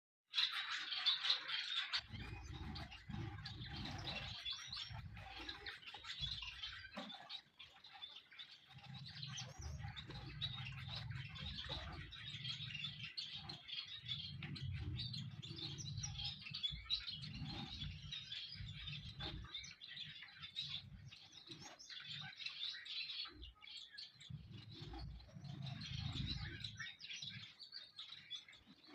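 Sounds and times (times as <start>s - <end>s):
finches chirping rapidly: 0.3s - 28.9s.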